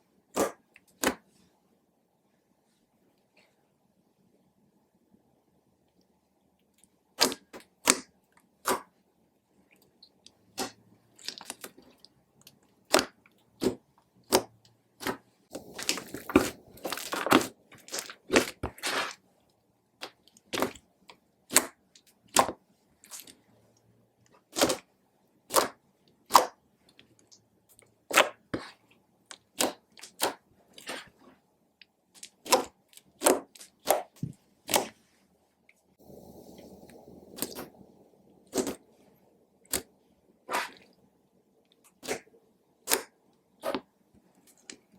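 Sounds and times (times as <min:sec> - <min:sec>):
slime squishing by hand: 0:07.1 - 0:09.0, 0:12.8 - 0:19.3, 0:24.4 - 0:24.9, 0:25.5 - 0:27.4, 0:32.2 - 0:35.1, 0:36.0 - 0:41.0.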